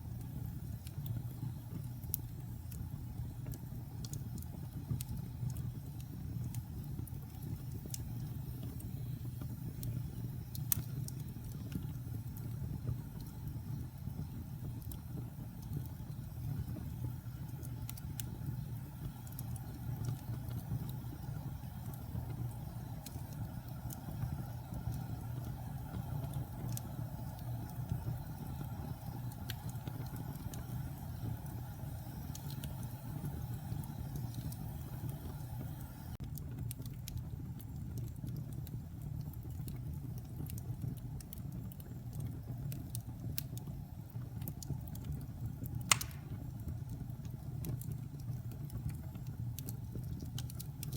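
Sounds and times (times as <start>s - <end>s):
low fire rumble: 0.0s - 50.9s
wood fire crackling: 0.0s - 50.9s
fire pop: 45.6s - 49.7s.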